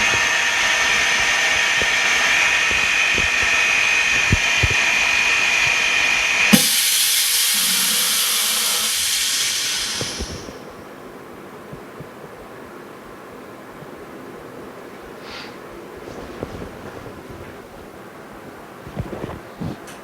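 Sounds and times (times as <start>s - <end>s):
air hissing: 0.0s - 10.8s
machine whirring with high whine: 0.0s - 11.2s.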